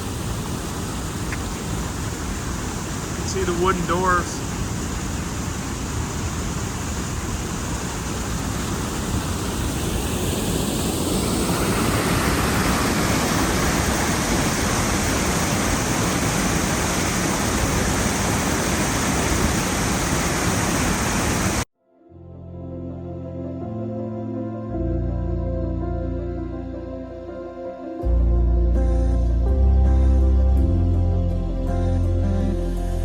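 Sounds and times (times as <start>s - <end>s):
water rushing at a canal lock: 0.0s - 21.6s.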